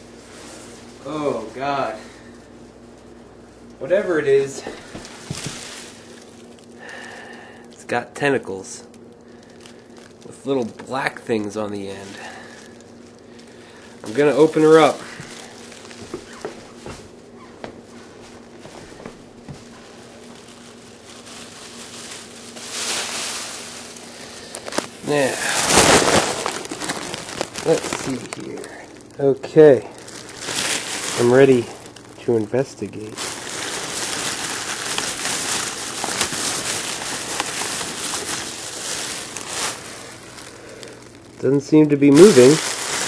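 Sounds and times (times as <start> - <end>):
faint steady hum: 0.0 - 43.0
food wrapping crinkling: 3.8 - 43.0
wrapping rustling swish: 19.6 - 24.1.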